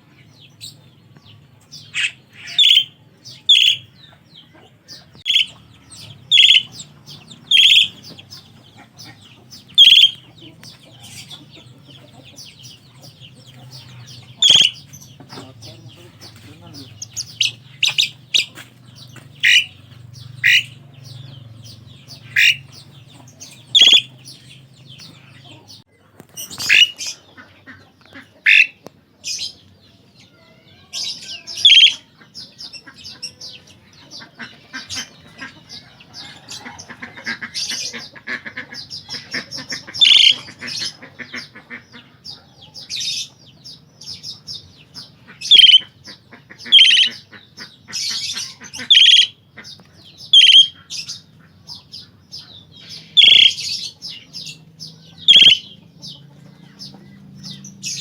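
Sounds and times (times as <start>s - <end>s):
starling squawking: 1.8s - 4.0s, 5.0s - 25.8s, 26.4s - 27.2s, 28.4s - 28.8s, 31.0s - 33.5s, 34.2s - 42.4s, 45.0s - 51.3s, 51.9s - 56.2s.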